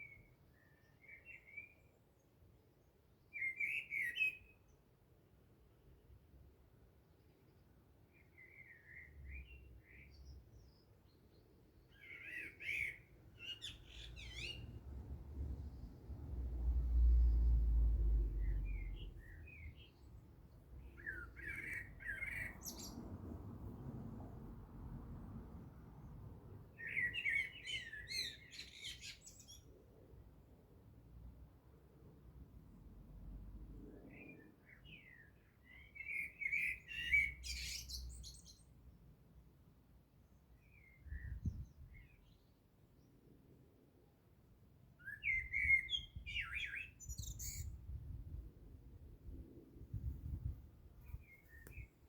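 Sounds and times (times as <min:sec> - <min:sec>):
small birds chirping: 0:07.2 - 0:16.2, 0:18.2 - 0:23.1, 0:26.8 - 0:29.7, 0:34.1 - 0:38.7, 0:45.0 - 0:48.2
faint low background rumble: 0:13.7 - 0:26.7.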